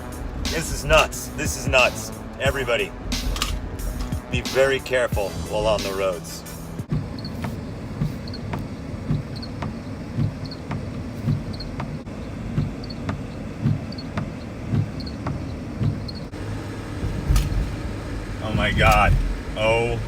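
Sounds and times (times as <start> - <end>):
car driving hum: 0.0 - 20.0
windshield wiper squeak: 6.8 - 16.4
windshield wiper thump: 6.8 - 20.0.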